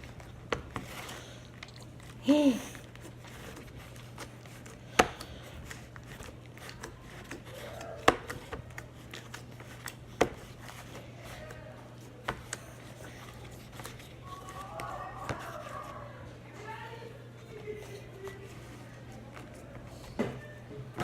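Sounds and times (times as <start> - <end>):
faint voices: 6.6 - 9.3, 10.6 - 21.0.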